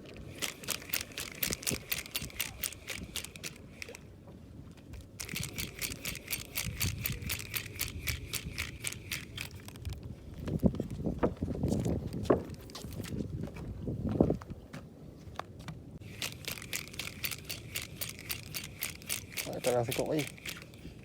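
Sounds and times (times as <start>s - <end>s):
fishing reel clicking: 0.3s - 4.0s, 5.2s - 10.0s, 16.0s - 21.0s.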